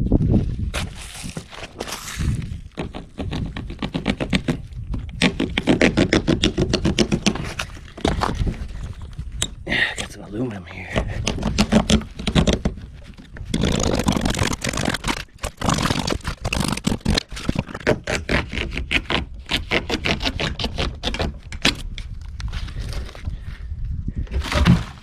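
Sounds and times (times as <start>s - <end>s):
wall paneling being torn off: 13.5s - 19.0s.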